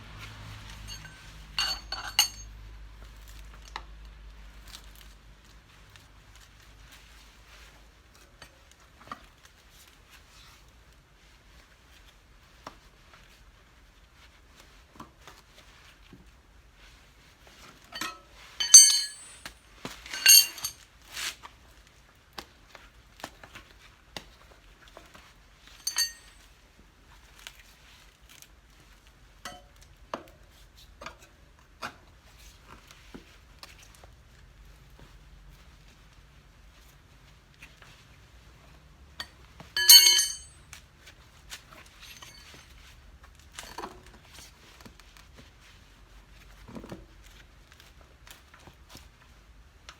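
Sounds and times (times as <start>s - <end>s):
metal hand tools clinking: 0.8s - 2.5s, 18.0s - 20.7s, 25.8s - 26.3s, 39.8s - 40.5s, 42.0s - 42.6s
loud ringing metallic clinks: 0.9s - 2.5s, 18.0s - 19.5s, 20.1s - 20.7s, 25.8s - 26.3s, 39.8s - 40.5s, 42.2s - 42.5s.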